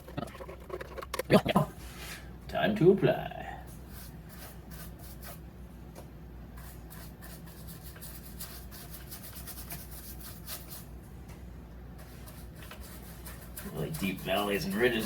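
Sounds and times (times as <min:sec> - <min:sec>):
low steady hum: 0:00.0 - 0:15.0
brush scratching on rough wood: 0:12.0 - 0:15.0.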